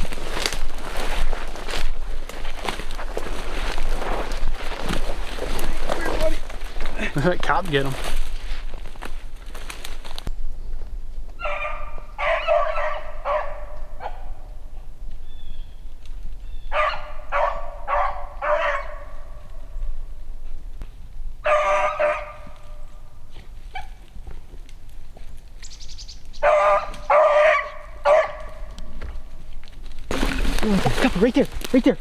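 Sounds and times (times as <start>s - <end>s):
puppy barking and baying: 11.4s - 14.4s, 16.7s - 19.2s, 21.4s - 22.5s, 26.4s - 28.6s.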